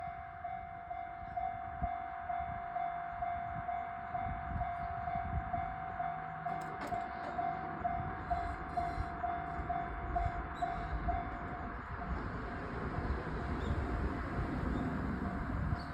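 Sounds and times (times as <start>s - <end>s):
level crossing alarm ringing: 0.0s - 12.2s.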